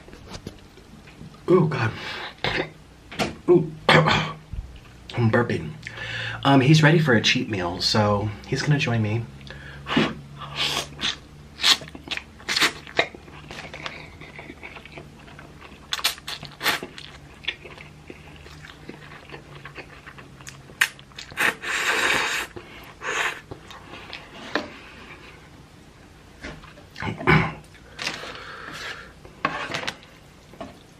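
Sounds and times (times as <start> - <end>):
person chewing noodles: 10.4 - 25.6
lip smacks: 15.9 - 22.6.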